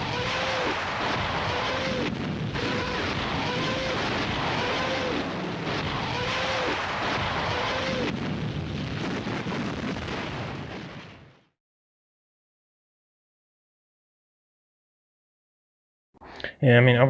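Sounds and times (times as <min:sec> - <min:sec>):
rushing roar of rocket motors: 0:00.0 - 0:10.2
rockets screaming wails: 0:00.0 - 0:11.3.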